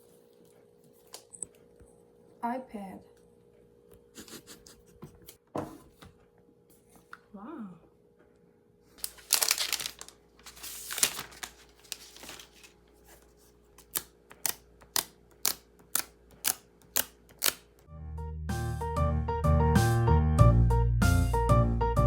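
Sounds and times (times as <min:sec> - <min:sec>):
rustling and handling noises: 0:09.0 - 0:17.6
piano background music: 0:17.9 - 0:22.0.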